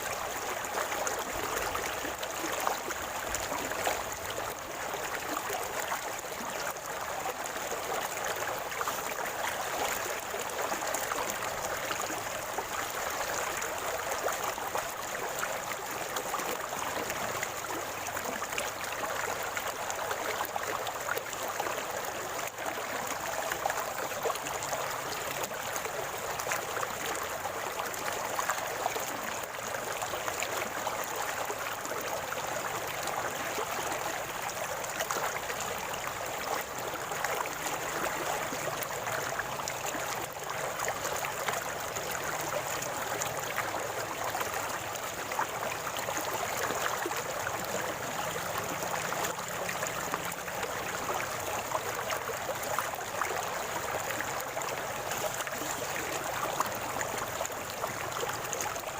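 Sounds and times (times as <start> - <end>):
stream water gurgling over stones: 0.0 - 58.9.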